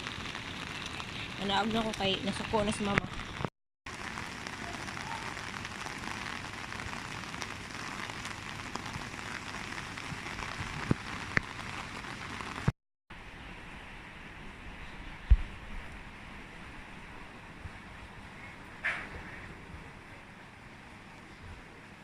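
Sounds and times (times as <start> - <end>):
heavy rain hissing: 0.0 - 12.7.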